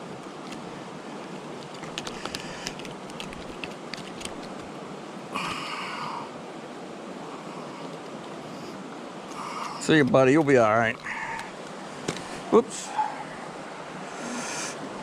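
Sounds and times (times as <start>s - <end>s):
creek water running: 0.0s - 15.0s.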